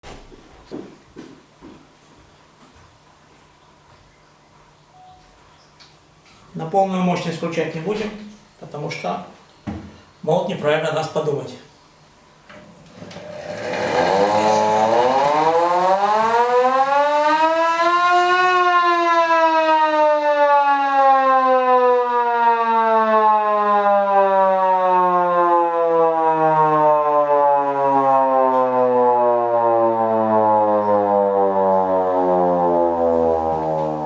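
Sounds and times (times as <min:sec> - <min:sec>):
hand-cranked siren wailing: 0:13.2 - 0:34.0.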